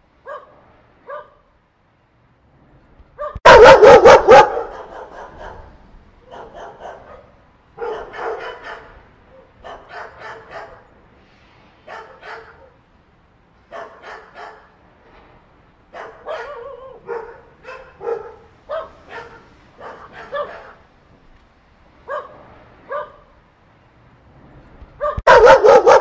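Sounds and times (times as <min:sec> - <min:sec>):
dogs barking: 0:00.2 - 0:01.4, 0:03.2 - 0:10.9, 0:11.9 - 0:12.8, 0:13.7 - 0:14.8, 0:15.9 - 0:20.8, 0:22.1 - 0:23.4, 0:25.0 - 0:26.0.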